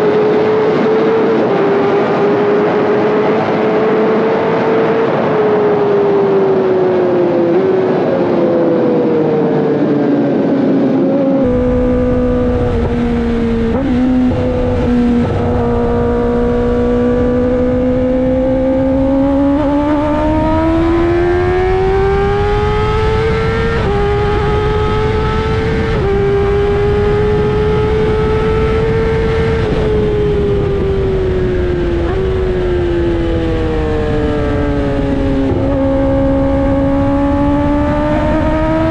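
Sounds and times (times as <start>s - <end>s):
wind noise: 0.0s - 38.9s
motorcycle engine running: 11.3s - 33.2s.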